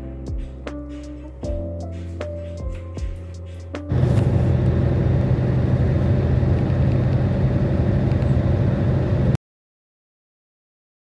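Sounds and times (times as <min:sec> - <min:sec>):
vehicle engine and road rumble: 0:03.9 - 0:09.4.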